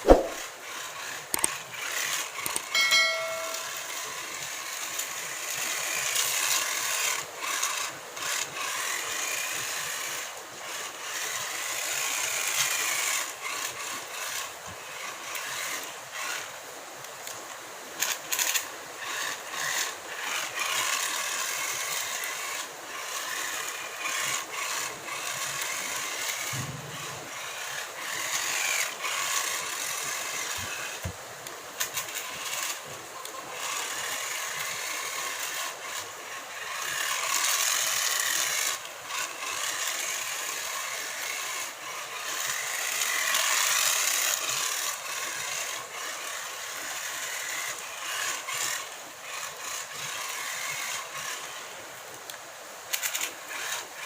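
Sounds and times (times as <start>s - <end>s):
small electric motor whining: 0.0s - 54.0s.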